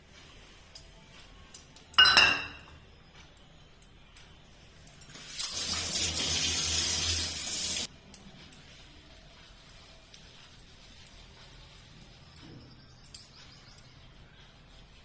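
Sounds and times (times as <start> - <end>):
utensil clinking: 2.0 - 2.8
kitchen tap running: 5.1 - 7.9.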